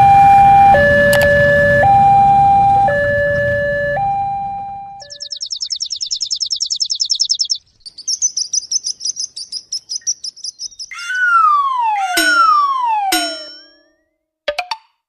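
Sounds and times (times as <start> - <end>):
bird chirping trill: 4.9 - 13.9
ringing tones sliding down: 10.9 - 14.8.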